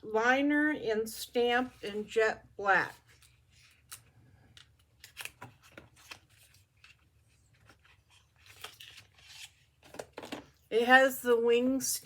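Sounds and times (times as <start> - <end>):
cosmetic packaging rustling and clicking: 3.0 - 10.7.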